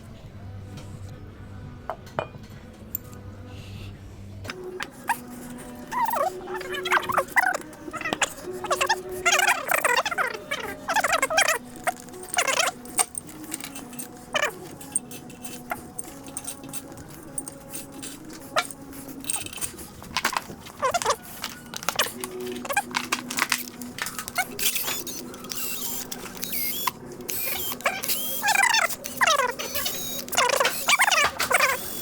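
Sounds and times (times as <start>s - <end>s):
metal tools clinking: 4.5s - 32.0s.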